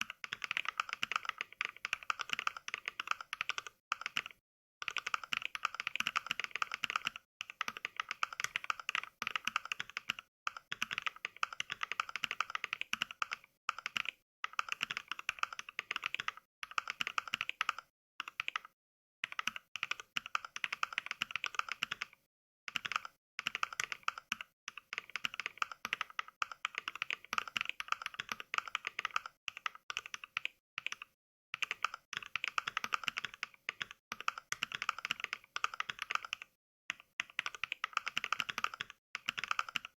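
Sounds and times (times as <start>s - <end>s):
simulated keyboard clacks: 0.0s - 22.1s, 22.7s - 39.9s.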